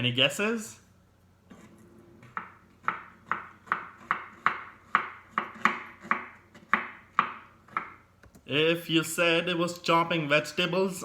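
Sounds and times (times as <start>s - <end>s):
knife chopping on wooden board: 1.5s - 8.0s.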